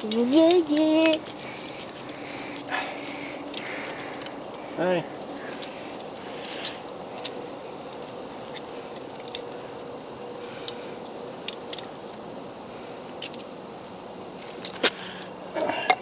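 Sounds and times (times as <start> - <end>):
background hiss: 0.0 - 16.0.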